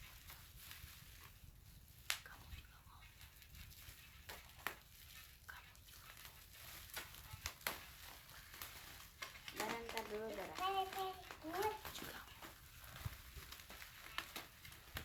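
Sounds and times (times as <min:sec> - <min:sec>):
parcel wrapping crinkling and tearing: 0:00.0 - 0:15.0.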